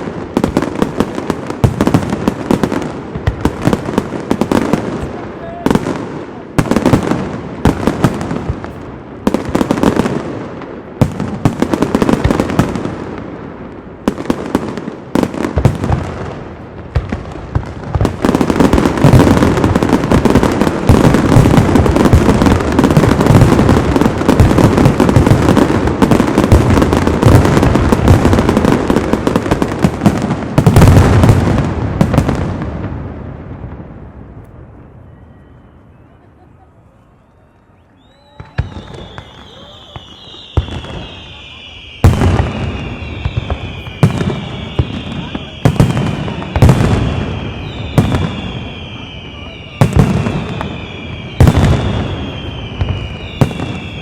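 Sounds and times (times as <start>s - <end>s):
rapid barrage of firework bangs: 0.0s - 34.3s, 38.3s - 54.0s.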